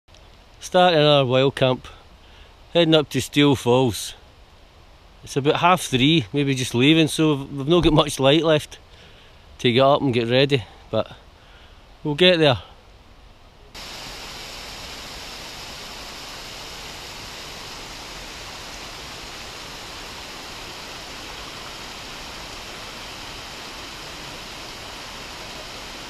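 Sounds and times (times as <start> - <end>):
fast-flowing water rushing: 13.8 - 26.0.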